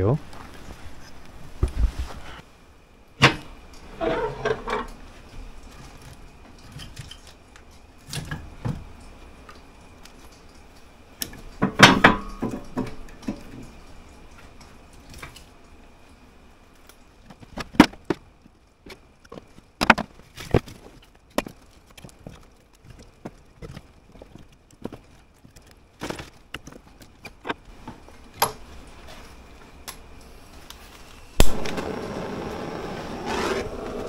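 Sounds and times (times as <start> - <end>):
wood and metal knocks and clanks: 11.6 - 13.7, 18.9 - 27.6.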